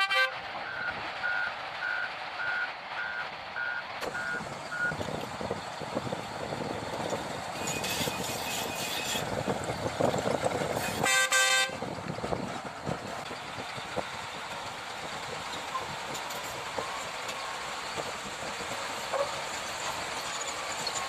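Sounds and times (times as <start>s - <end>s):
loud horn blast: 0.0s - 0.4s, 10.8s - 11.8s
heavy vehicle rumbling: 0.0s - 21.0s.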